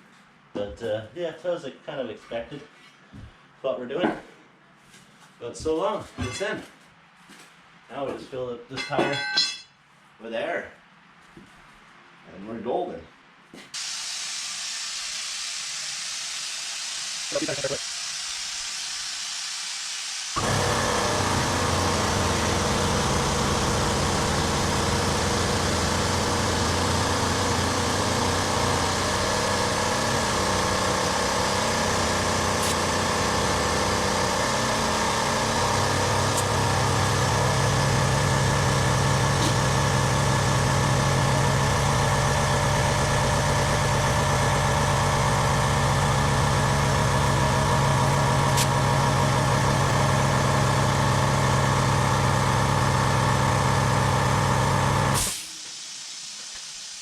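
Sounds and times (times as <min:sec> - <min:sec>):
air compressor running: 0:13.8 - 0:57.0.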